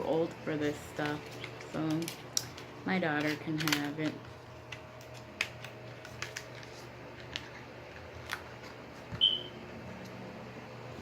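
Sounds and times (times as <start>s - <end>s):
packaging clicking and tapping: 0.9s - 9.3s.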